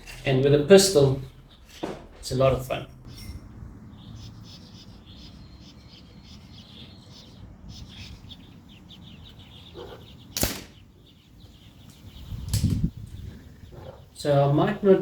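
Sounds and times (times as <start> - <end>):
air pistol shot: 10.4 - 10.8.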